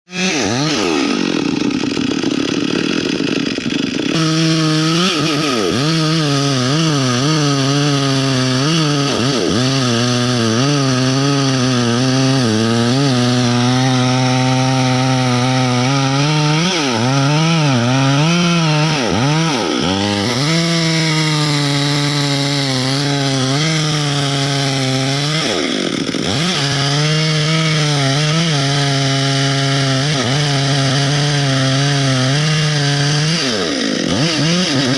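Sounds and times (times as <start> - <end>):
chainsaw cutting wood: 0.1 - 34.9.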